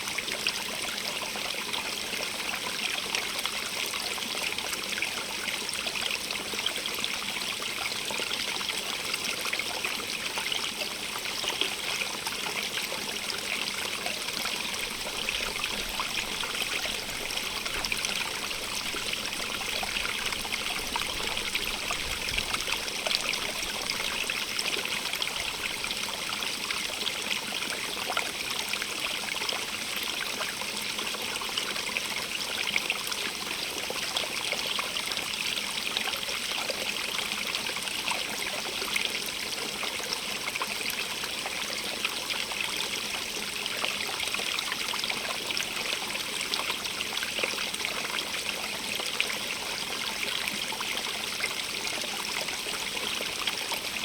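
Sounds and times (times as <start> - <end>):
stream water splashing: 13.2 - 27.0.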